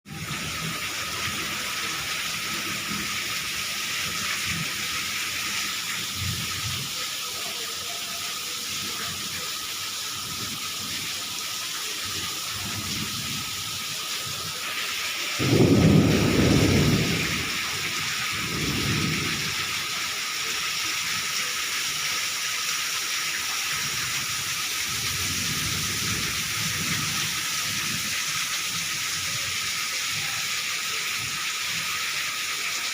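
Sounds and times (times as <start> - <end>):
rain hissing: 0.1 - 32.9
thunder rumbling: 15.4 - 19.9.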